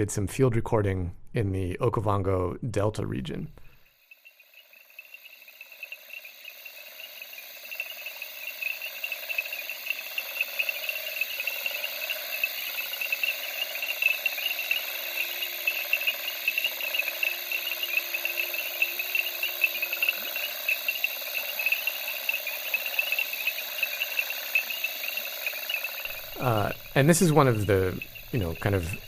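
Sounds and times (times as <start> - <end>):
insects chirring: 3.3 - 29.0
faint animal calls: 3.6 - 29.0.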